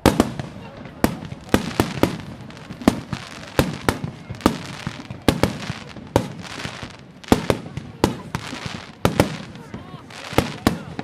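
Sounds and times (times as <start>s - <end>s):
fireworks bangs: 0.0s - 11.0s
fireworks crackling: 0.0s - 11.0s.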